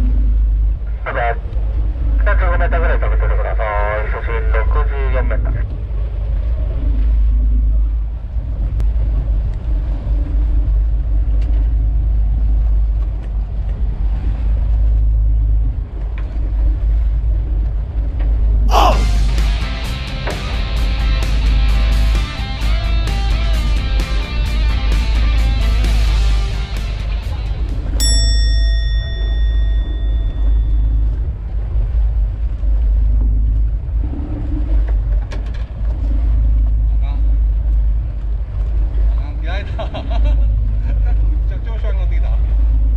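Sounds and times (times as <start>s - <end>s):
music: 19.0s - 27.7s
ringing chime: 28.0s - 31.0s.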